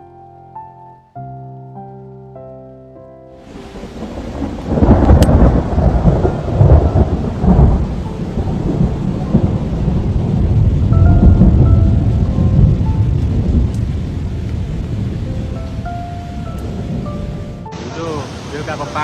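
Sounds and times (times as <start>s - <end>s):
piano music: 0.0s - 19.0s
flooded river roaring: 17.7s - 19.0s.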